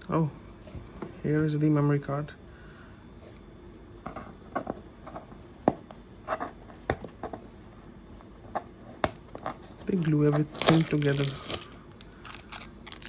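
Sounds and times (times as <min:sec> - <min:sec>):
hands scratching packaging: 0:09.3 - 0:13.0
packaging clicks: 0:09.8 - 0:13.0.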